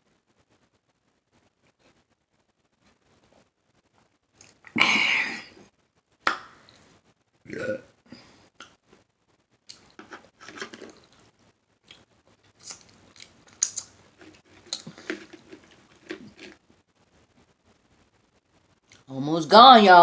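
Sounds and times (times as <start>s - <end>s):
chewing food: 10.6s - 16.6s
wet mouth smacks and clicks: 11.9s - 13.9s.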